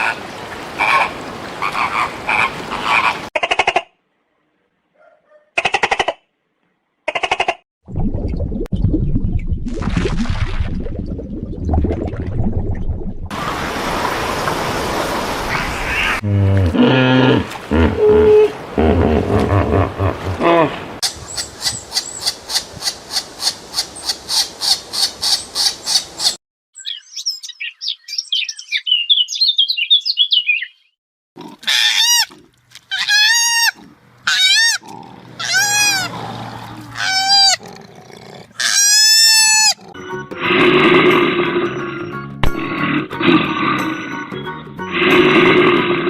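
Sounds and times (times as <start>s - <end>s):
rough noisy animal call: 15.8s - 20.7s, 32.9s - 39.9s
pulsed animal calls: 33.0s - 37.7s
low animal grunts: 37.6s - 38.6s.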